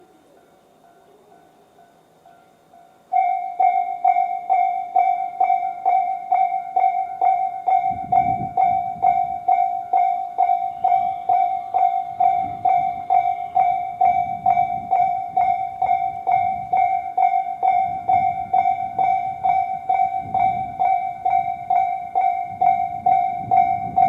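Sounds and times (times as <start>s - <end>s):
faint steady high tone: 0.0s - 24.0s
level-crossing warning bell: 0.0s - 24.0s.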